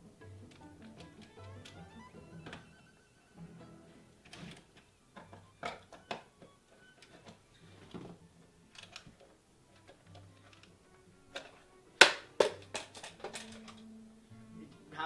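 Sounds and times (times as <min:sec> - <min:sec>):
pry tool clicking on plastic case: 0:11.4 - 0:13.8.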